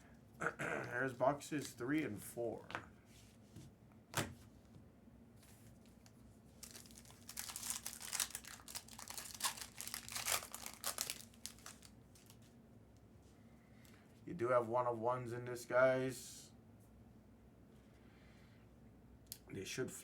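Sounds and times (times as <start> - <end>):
plastic wrapping tearing and crinkling: 6.0 - 12.4.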